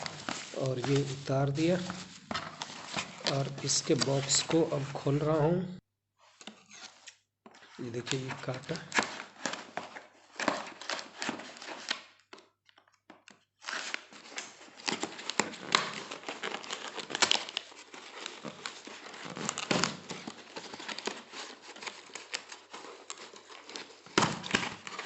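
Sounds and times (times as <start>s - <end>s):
cardboard box rustling: 0.0s - 5.0s, 13.7s - 25.0s.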